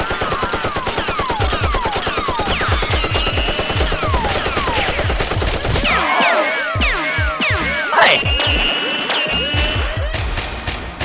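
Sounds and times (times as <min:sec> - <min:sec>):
rapid automatic gunfire: 0:00.0 - 0:06.1.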